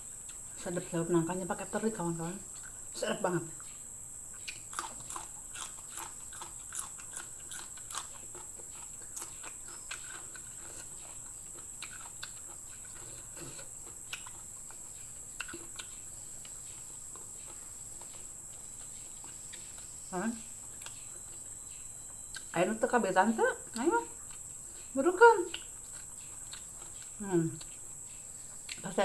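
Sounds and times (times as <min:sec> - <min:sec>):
chewing with wet crunches: 0:00.0 - 0:29.0.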